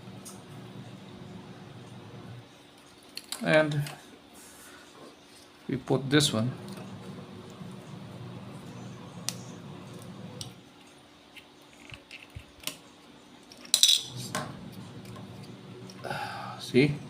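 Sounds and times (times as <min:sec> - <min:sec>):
small hard parts clattering: 0:13.4 - 0:14.2.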